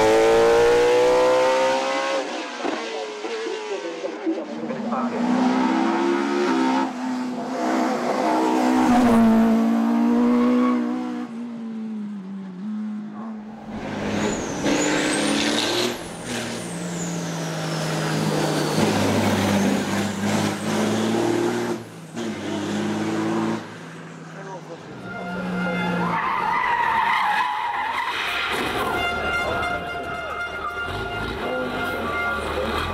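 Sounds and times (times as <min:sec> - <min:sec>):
racing car engine revving: 0:00.0 - 0:11.4, 0:12.6 - 0:23.8.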